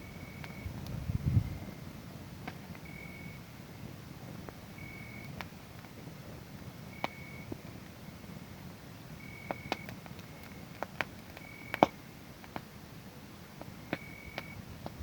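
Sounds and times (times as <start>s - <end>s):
cricket trilling: 0.0s - 0.8s, 2.8s - 3.4s, 4.8s - 5.4s, 6.9s - 7.6s, 9.2s - 12.0s, 13.9s - 14.7s
fire popping: 0.0s - 15.0s
wood fire crackling: 0.0s - 15.0s.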